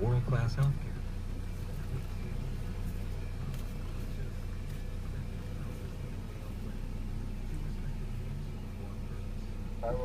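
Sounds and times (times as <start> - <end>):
car cabin hum and rumble: 0.0 - 10.0.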